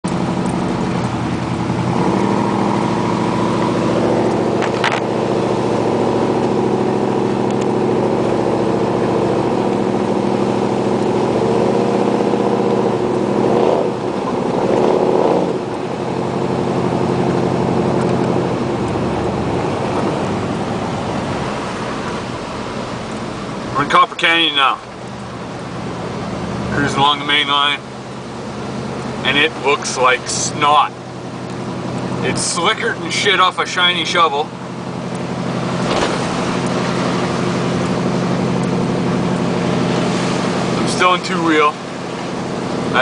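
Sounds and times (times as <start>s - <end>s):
truck engine driving: 0.0s - 43.0s.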